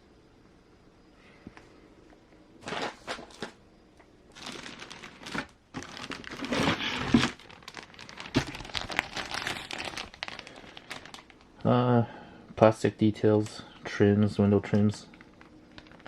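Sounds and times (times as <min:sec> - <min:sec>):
packaging crinkling: 0:04.3 - 0:11.7, 0:14.6 - 0:16.0.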